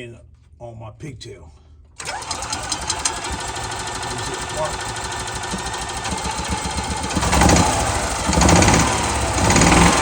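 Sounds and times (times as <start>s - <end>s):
golf cart engine cranking: 2.0s - 10.0s.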